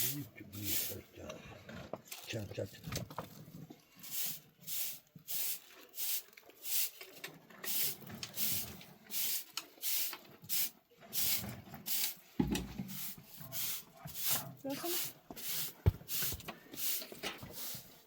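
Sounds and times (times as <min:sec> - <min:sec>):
tool scraping floor: 0:04.0 - 0:18.0.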